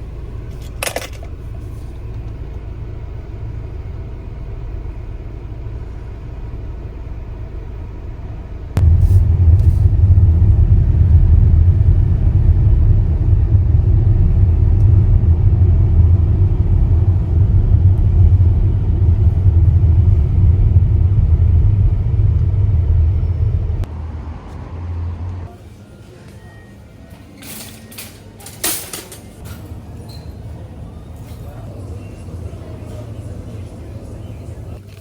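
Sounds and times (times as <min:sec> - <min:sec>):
car engine and road noise: 0:00.0 - 0:25.6.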